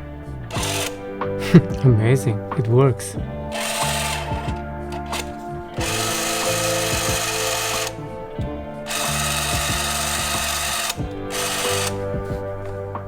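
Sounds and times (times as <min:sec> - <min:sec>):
film camera motor whirring: 0:00.5 - 0:01.0, 0:03.6 - 0:08.0, 0:08.9 - 0:12.0.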